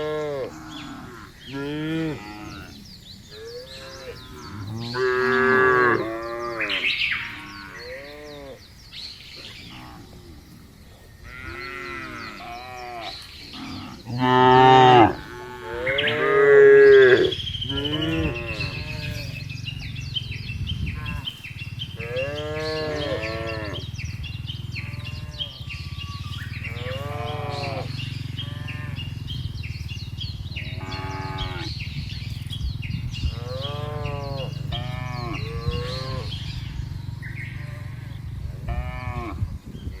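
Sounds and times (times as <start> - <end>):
cattle mooing: 0.0 - 8.6, 11.2 - 19.4, 20.9 - 23.9, 24.8 - 29.3, 30.7 - 31.9, 33.3 - 36.8, 37.4 - 39.6.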